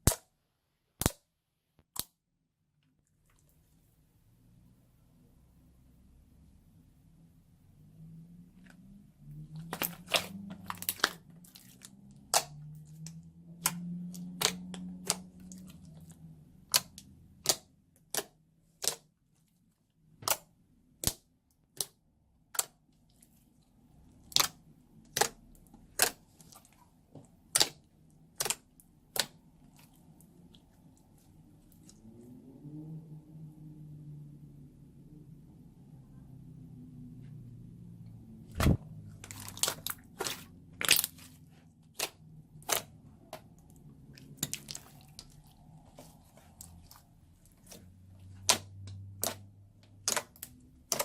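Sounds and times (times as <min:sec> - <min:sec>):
slime squelching: 0:08.4 - 0:32.4, 0:38.5 - 0:51.0.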